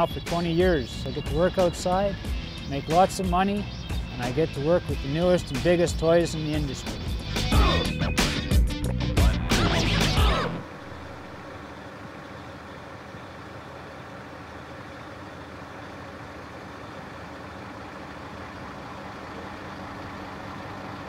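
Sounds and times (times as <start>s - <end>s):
crane diesel engine idling: 9.3s - 21.0s.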